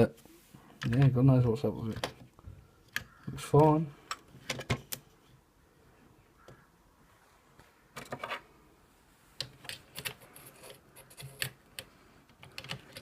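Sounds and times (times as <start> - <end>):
plastic clicks and rattles: 0.8 - 1.2, 4.0 - 5.1, 9.4 - 13.0.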